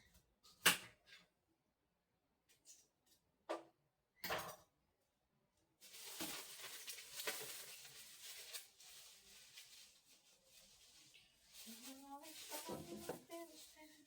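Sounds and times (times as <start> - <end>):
bags rustling: 5.8 - 14.0.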